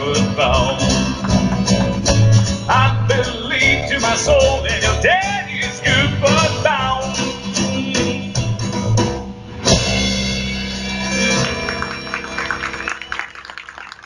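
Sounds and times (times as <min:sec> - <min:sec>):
person singing: 0:00.0 - 0:01.2, 0:02.7 - 0:08.5
live blues band playing: 0:00.0 - 0:13.6.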